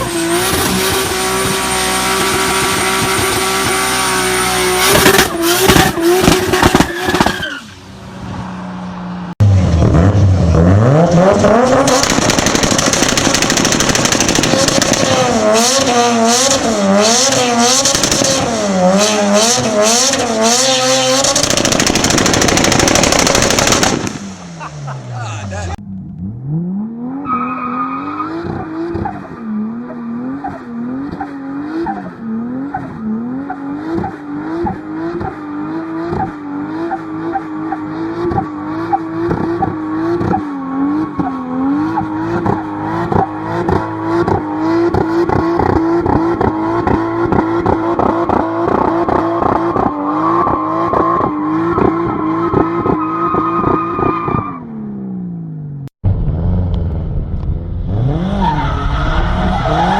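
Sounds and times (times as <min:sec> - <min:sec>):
car engine revving: 0:00.0 - 0:07.4, 0:08.2 - 0:59.9
exhaust pops and crackles: 0:04.9 - 0:07.4, 0:11.4 - 0:16.6, 0:17.8 - 0:18.6, 0:21.1 - 0:24.4, 0:42.4 - 0:49.9.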